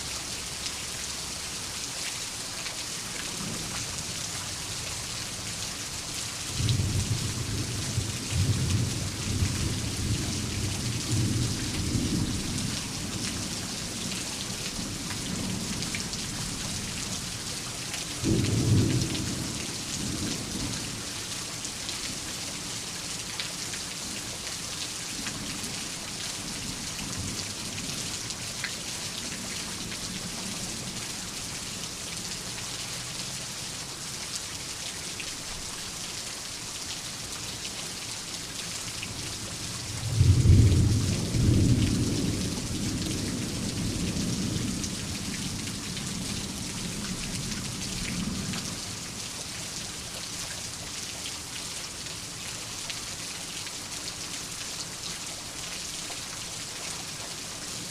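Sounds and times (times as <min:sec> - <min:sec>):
heavy rain: 0:00.0 - 0:57.9
rolling thunder: 0:40.0 - 0:43.3.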